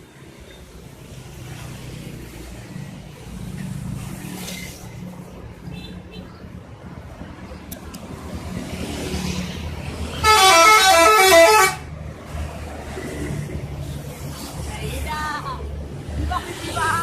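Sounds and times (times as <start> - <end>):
passing traffic rumble: 0.0 - 17.0
bus horn melody: 10.2 - 11.9.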